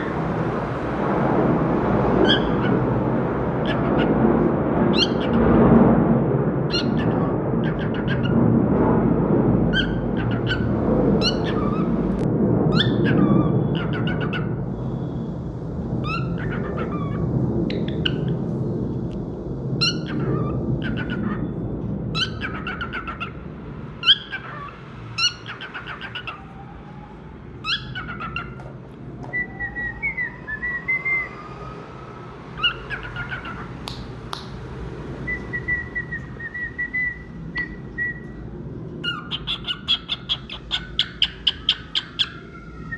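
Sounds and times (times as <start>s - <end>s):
cockatiel chirping: 2.2s - 2.8s, 3.6s - 4.1s, 4.9s - 5.4s, 6.7s - 8.4s, 9.7s - 12.0s, 12.7s - 14.5s, 16.0s - 18.4s, 19.8s - 21.4s, 22.2s - 23.4s, 24.0s - 26.5s, 27.6s - 31.3s, 32.6s - 34.6s, 35.3s - 38.4s, 39.0s - 42.6s
cockatiel warbling whistled song: 2.2s - 3.0s, 4.9s - 5.4s, 6.7s - 8.4s, 9.7s - 14.6s, 16.0s - 18.4s, 19.8s - 21.6s, 22.2s - 23.4s, 24.0s - 31.9s, 32.5s - 34.6s, 35.2s - 38.4s, 39.0s - 42.9s.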